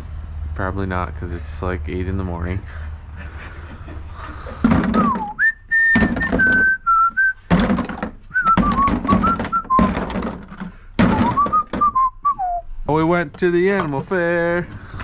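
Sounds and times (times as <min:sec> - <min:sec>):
knocking: 0:04.6 - 0:06.8, 0:07.5 - 0:12.0
person whistling a tune: 0:05.0 - 0:07.5, 0:08.3 - 0:10.0, 0:11.1 - 0:12.7.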